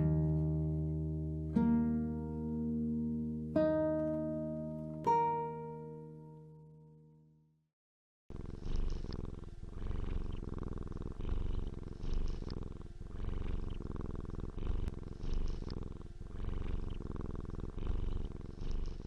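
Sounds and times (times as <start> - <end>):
cat purring: 8.3 - 19.0.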